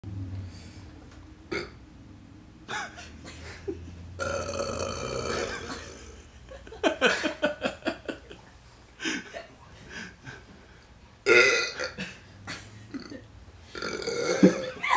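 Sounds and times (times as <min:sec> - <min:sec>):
man belching: 0:01.5 - 0:01.8, 0:04.2 - 0:06.2, 0:11.2 - 0:12.0, 0:12.9 - 0:14.8.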